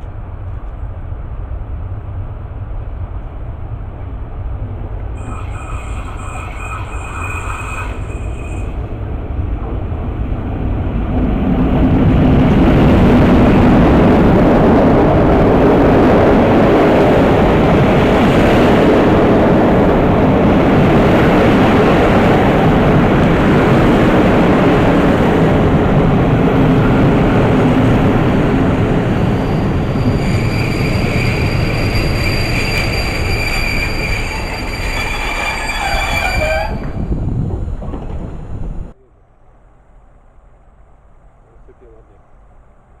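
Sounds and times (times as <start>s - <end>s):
train wheels rumbling on rails: 0.0s - 43.0s
high steady whine: 5.1s - 9.0s.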